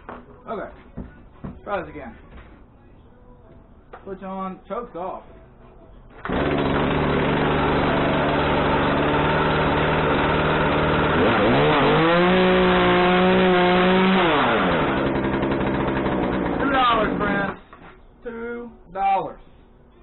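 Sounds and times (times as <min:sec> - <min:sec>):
chainsaw engine idling and revving: 0:06.2 - 0:17.6.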